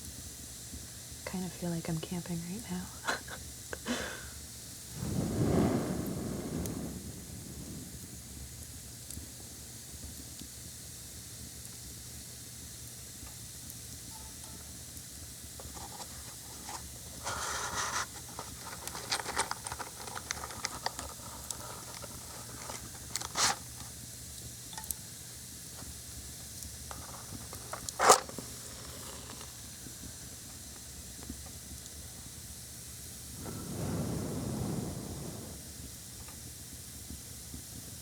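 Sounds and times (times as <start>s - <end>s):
steady hiss of burning: 0.0s - 38.0s
match striking and flaring: 4.9s - 8.6s, 15.6s - 23.8s, 26.9s - 30.0s, 33.3s - 36.0s
small crackles: 4.9s - 9.4s, 13.2s - 32.2s, 33.2s - 36.4s.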